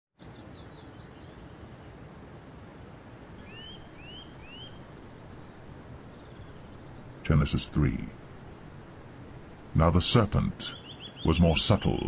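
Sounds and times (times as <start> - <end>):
high bird call: 3.4 - 5.4, 10.6 - 12.0
short rising bird chirps: 3.4 - 7.2
steady rushing background: 3.8 - 10.6.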